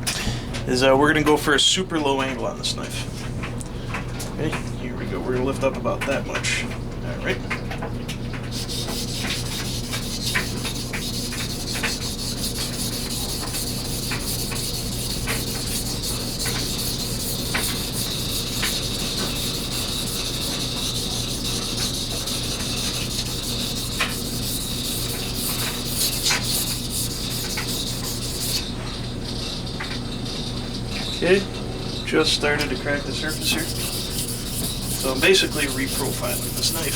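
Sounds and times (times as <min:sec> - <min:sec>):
knife grinding on whetstone: 0:08.5 - 0:28.7, 0:33.2 - 0:36.9.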